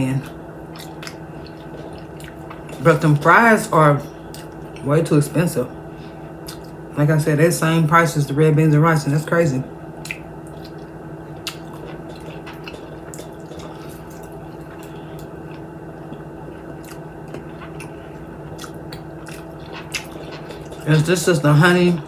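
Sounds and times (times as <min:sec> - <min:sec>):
steady low hum: 0:00.0 - 0:22.0
person chewing food: 0:00.2 - 0:03.3, 0:04.0 - 0:04.9, 0:05.9 - 0:06.9, 0:10.0 - 0:22.0.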